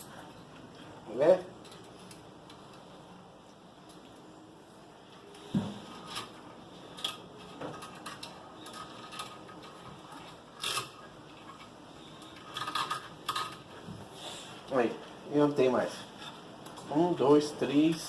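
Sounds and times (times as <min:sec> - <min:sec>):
cable rustling: 0:04.9 - 0:18.0.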